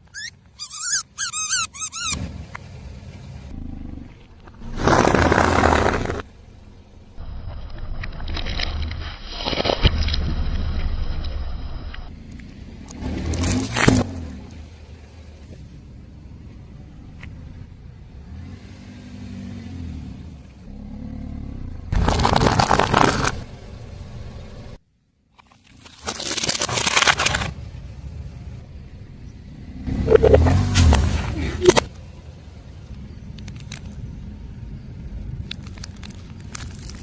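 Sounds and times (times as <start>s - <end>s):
low engine rumble: 0.0s - 8.9s, 10.3s - 24.8s, 27.3s - 37.0s
tyre rolling over objects: 4.5s - 6.3s
crunching and crackling: 7.5s - 10.4s, 21.9s - 23.4s, 25.3s - 27.6s, 33.3s - 34.1s, 35.1s - 37.0s.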